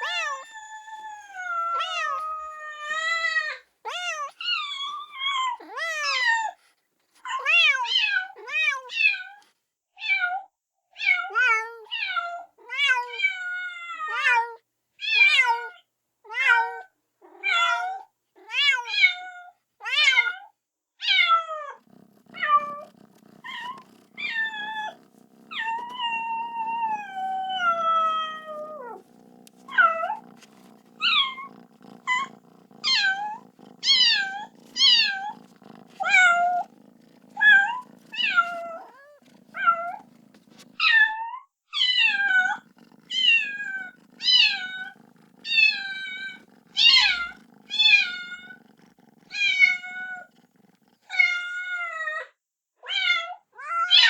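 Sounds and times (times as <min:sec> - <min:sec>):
kitten meowing: 0:00.0 - 0:06.5, 0:21.9 - 0:41.0, 0:41.8 - 0:50.3.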